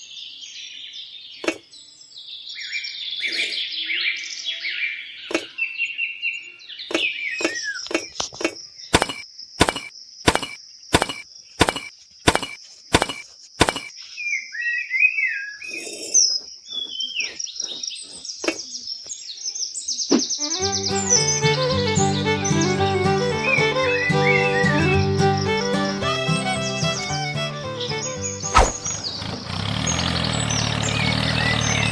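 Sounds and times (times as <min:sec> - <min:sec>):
birds chirping: 0:06.8 - 0:31.9
sharp taps: 0:09.0 - 0:13.9.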